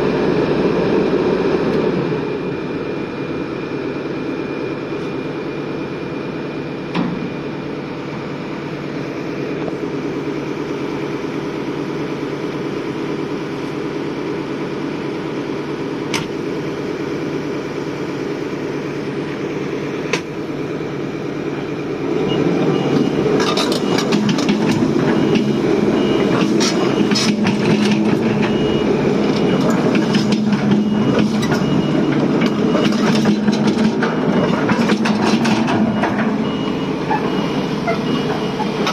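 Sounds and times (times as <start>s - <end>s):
excavator diesel engine running: 0.0s - 38.9s
alarm beeping: 22.2s - 38.9s
metal clanks and knocks: 29.3s - 38.9s.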